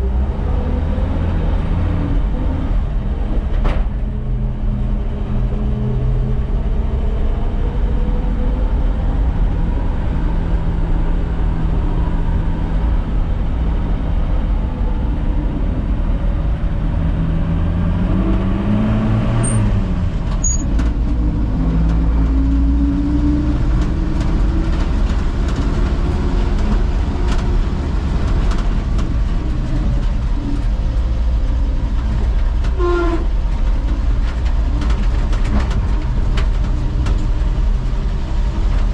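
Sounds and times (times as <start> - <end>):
truck engine revving: 0.0 - 3.5, 5.1 - 30.8.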